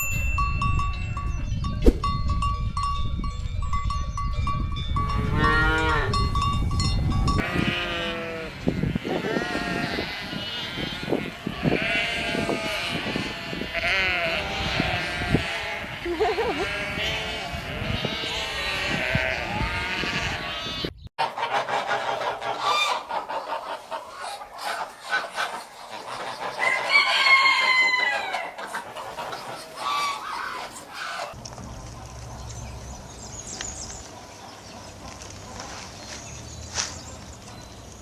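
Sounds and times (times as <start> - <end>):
sheep bleating: 7.4 - 20.9
chickens clucking: 20.3 - 31.4
rooster crowing: 26.4 - 28.7.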